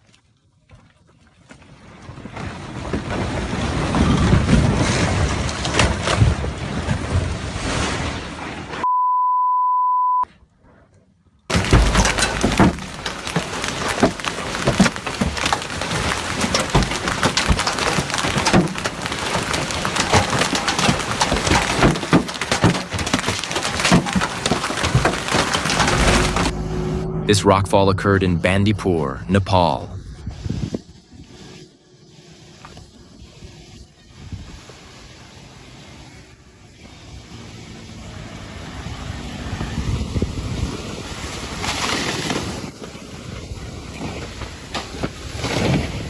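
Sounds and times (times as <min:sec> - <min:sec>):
steady beep: 0:08.8 - 0:10.2, 0:26.5 - 0:29.9
rock crashing and clattering: 0:11.5 - 0:26.6
rumble of sliding stone: 0:11.5 - 0:30.9.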